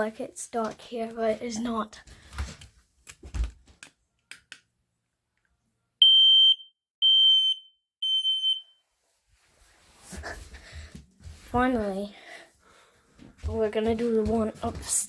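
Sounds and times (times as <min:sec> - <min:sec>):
smoke alarm beeps: 0:06.0 - 0:08.8.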